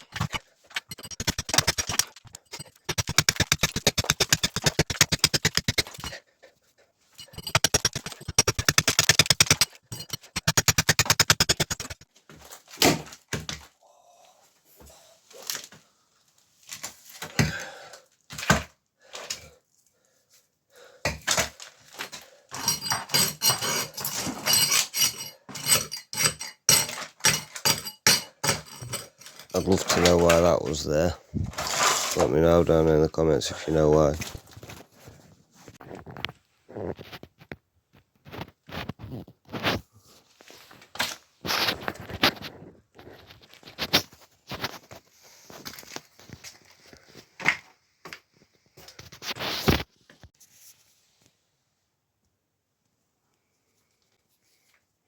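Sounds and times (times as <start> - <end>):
dense irregular clattering: 0.0 - 6.2.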